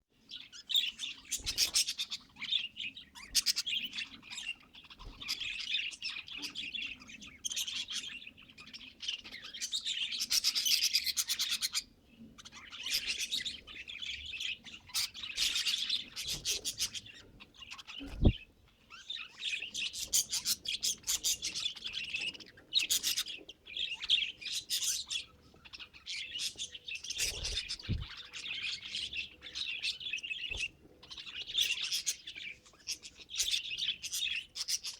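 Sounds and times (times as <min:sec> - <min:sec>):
budgerigars chattering and warbling: 0:00.3 - 0:34.9
soft thumps: 0:27.8 - 0:28.1.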